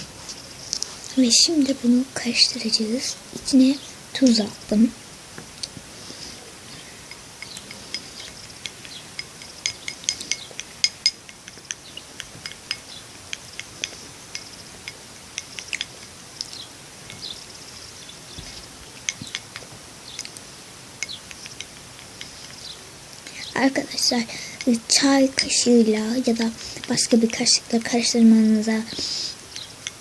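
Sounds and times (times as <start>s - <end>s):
stirrer clinking against glass: 7.1s - 17.4s.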